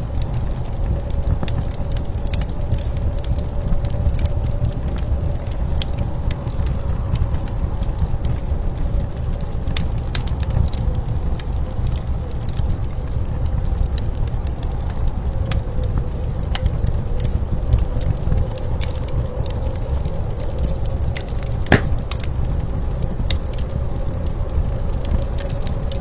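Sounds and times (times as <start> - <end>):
wood fire crackling and popping: 21.7 - 22.2.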